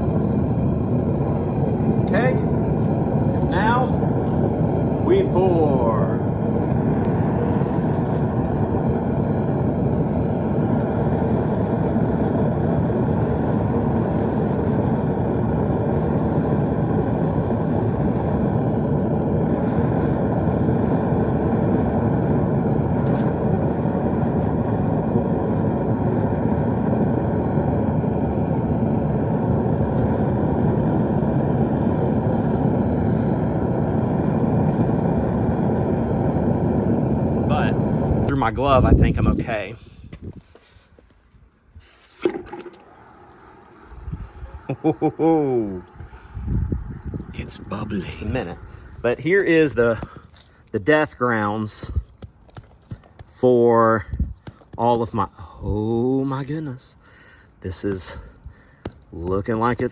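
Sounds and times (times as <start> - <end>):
gas furnace burner roaring: 0.0 - 40.6, 42.1 - 59.9.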